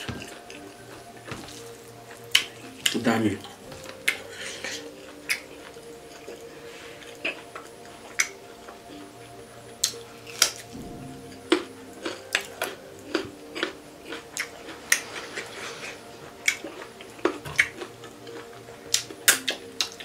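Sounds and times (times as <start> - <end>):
soft background music: 0.0 - 20.0
mouth chewing clicks and smacks: 2.3 - 6.4, 7.2 - 9.0, 16.4 - 20.0.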